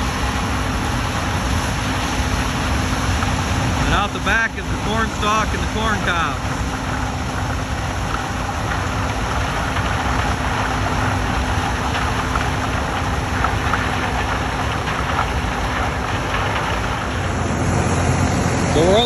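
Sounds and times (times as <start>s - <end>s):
combine harvester engine drone: 0.0s - 19.0s.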